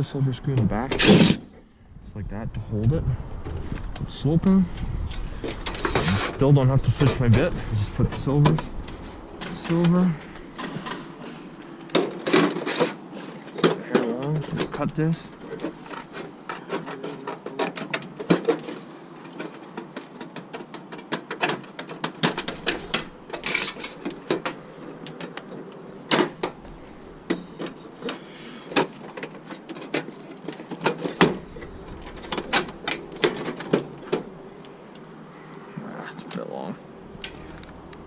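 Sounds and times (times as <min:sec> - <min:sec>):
metal snips cutting gutter: 0:00.6 - 0:01.5.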